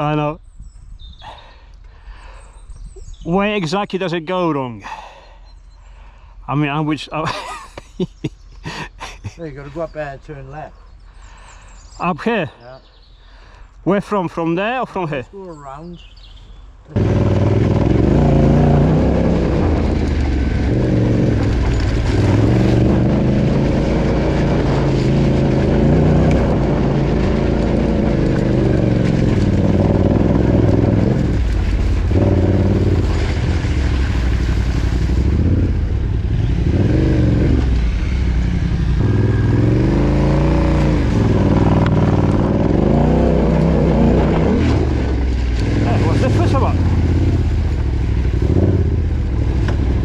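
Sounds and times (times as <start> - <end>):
motorcycle engine revving: 16.9 - 50.0.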